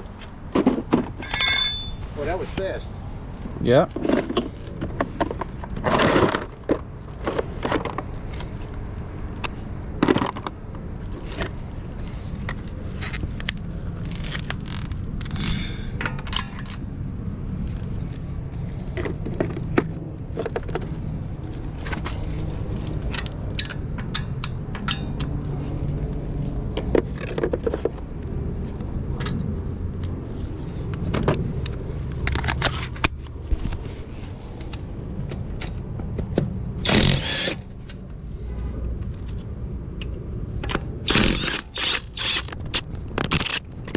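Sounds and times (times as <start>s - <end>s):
metal tools clinking and scraping: 0.0s - 2.9s, 15.3s - 17.0s
steady low rumble: 0.0s - 43.9s.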